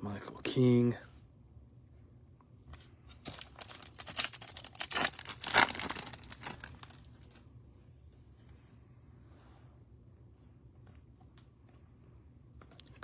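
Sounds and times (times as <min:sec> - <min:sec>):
plastic wrapper crinkling and tearing: 0:03.2 - 0:07.4.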